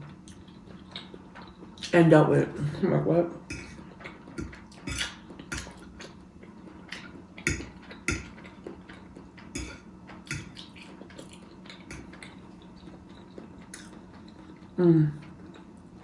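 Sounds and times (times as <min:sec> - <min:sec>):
fork clicking and scraping plate: 0:03.5 - 0:03.8, 0:04.4 - 0:06.1, 0:06.9 - 0:08.8, 0:09.5 - 0:10.6.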